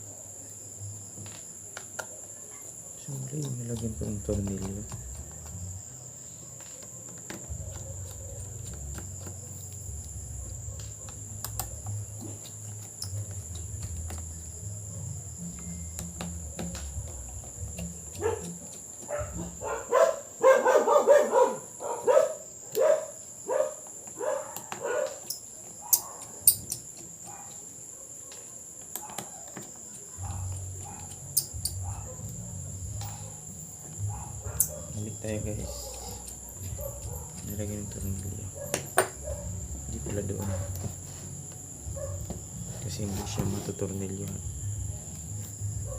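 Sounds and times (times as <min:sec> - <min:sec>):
dog barking: 0:06.4 - 0:09.6, 0:10.3 - 0:12.5, 0:18.1 - 0:26.6, 0:27.2 - 0:33.4, 0:34.0 - 0:40.9, 0:41.9 - 0:42.4.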